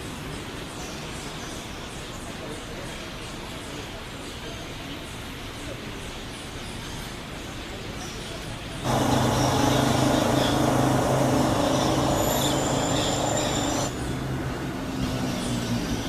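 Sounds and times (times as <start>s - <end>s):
motor humming: 8.9s - 13.9s.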